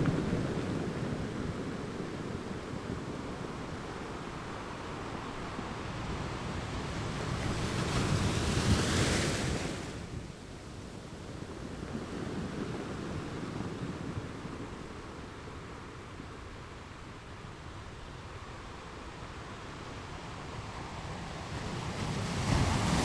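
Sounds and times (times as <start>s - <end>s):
waves crashing on rocks: 21.2s - 23.0s.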